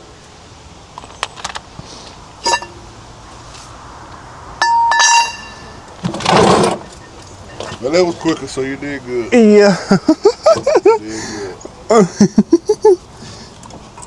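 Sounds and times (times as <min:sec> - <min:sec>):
metal parts clicking and clinking: 0:02.4 - 0:02.8.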